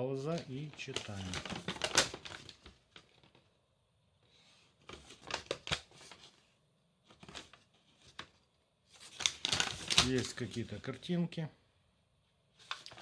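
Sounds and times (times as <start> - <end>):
paper pages rustling: 0.2 - 3.5, 4.3 - 6.4, 7.0 - 10.8, 12.5 - 13.0.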